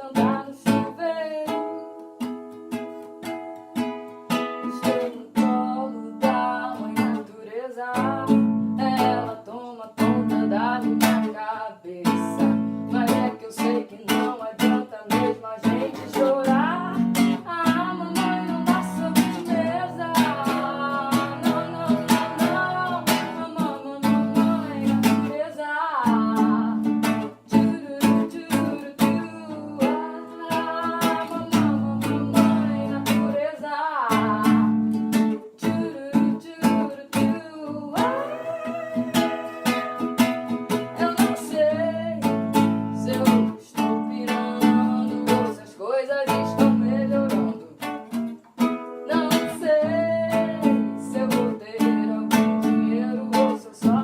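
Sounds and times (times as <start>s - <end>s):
person singing: 0.0s - 2.1s, 4.6s - 48.0s, 49.0s - 54.0s
acoustic guitar strumming: 0.1s - 7.3s, 12.0s - 25.4s, 36.2s - 45.6s.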